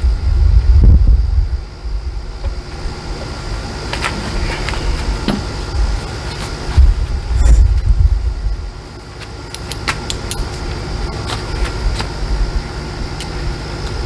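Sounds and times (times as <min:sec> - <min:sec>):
low rumble: 0:00.0 - 0:08.8.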